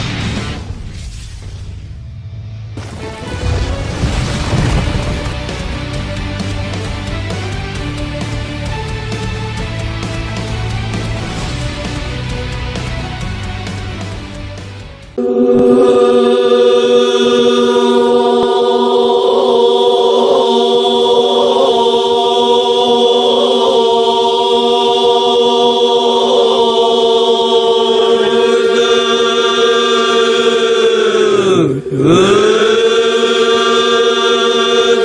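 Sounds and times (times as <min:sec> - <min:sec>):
emergency alert tone drone: 0:15.2 - 0:20.8.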